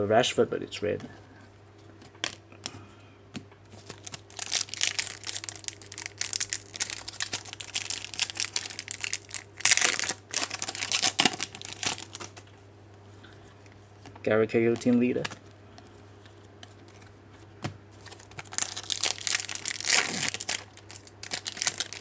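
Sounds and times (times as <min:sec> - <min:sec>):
wrapper crinkling and tearing: 0:03.7 - 0:12.4, 0:18.0 - 0:22.0.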